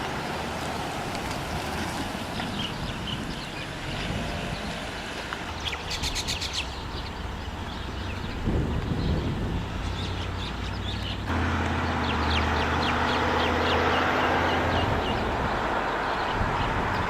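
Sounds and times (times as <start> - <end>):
bird chirping: 5.6 - 17.0.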